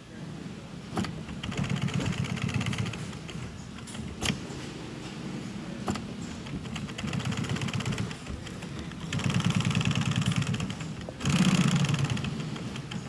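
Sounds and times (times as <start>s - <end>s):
sewing machine stitching: 1.0s - 4.4s, 6.5s - 13.0s.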